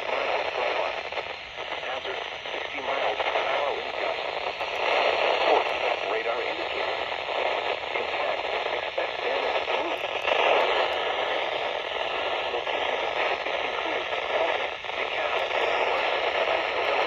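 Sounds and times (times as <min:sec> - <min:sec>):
faint crackles: 0:00.0 - 0:17.0
radio static hiss: 0:00.0 - 0:17.0.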